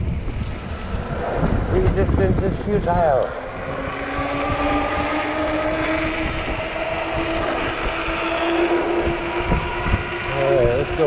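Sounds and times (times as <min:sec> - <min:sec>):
wind buffeting microphone: 0:00.0 - 0:11.0
electric motor whining: 0:00.1 - 0:11.0.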